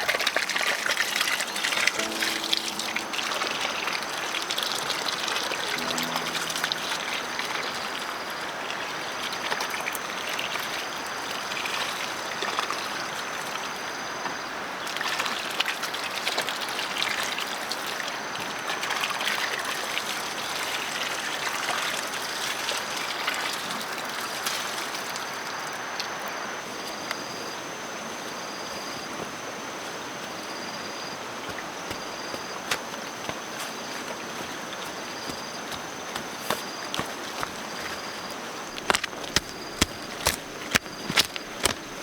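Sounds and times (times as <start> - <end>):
water trickling: 0.2 - 12.2
thin high whine: 2.0 - 9.4.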